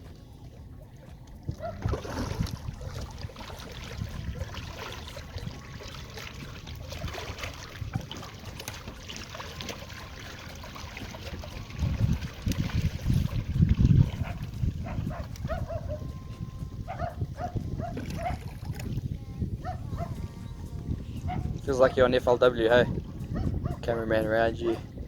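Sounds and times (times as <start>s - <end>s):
water sloshing and trickling: 0.0s - 25.0s
low rumbling: 11.6s - 25.0s.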